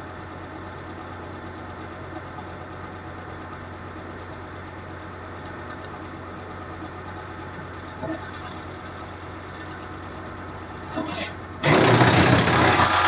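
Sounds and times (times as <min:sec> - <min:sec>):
wood chipper engine idling: 0:00.0 - 0:13.0.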